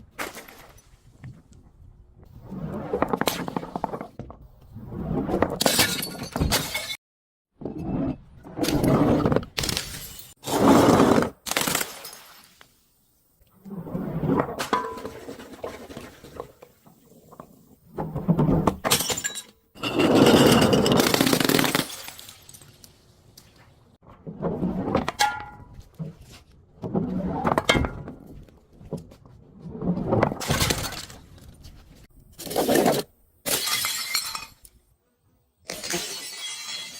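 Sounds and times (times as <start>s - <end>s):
glass bottles breaking: 9.6s - 10.4s, 18.9s - 22.9s, 33.5s - 34.7s, 35.7s - 36.9s.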